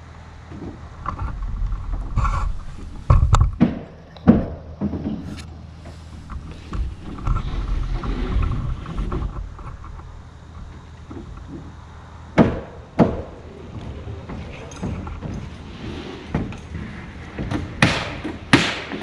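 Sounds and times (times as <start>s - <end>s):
wind rumble on microphone: 0.8s - 3.6s, 6.2s - 11.8s
thumps and knocks on roof: 3.1s - 5.4s, 12.4s - 19.0s.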